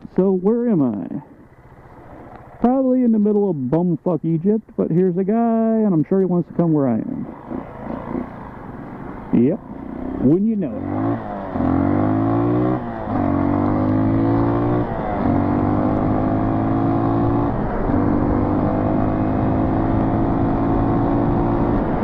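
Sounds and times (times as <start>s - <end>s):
dirt bike engine shifting gears: 7.1s - 22.0s.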